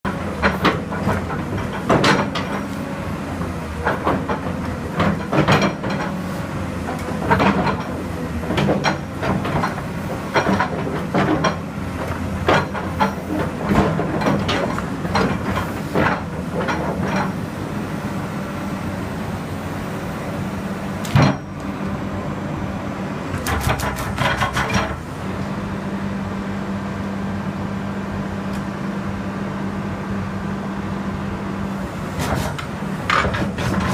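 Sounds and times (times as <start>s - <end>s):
excavator diesel engine running: 0.1s - 33.9s
sharp metallic knocks and clanks: 23.4s - 25.0s.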